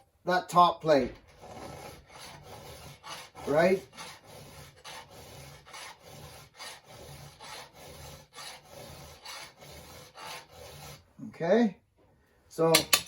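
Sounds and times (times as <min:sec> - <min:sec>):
file rasping on chainsaw chain: 0:01.3 - 0:11.1.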